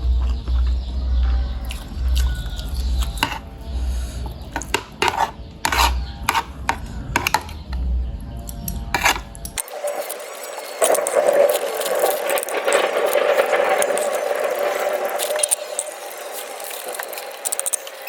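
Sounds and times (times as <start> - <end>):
cutlery clinking against bowl: 3.0 - 3.5, 4.4 - 7.7, 9.0 - 9.7.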